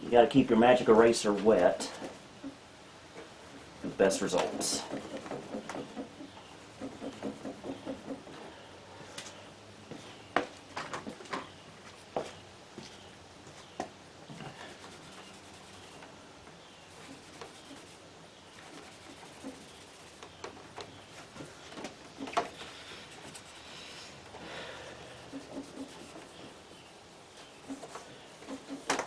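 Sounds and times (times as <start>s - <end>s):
eraser rubbing plastic case: 25.3s - 26.6s.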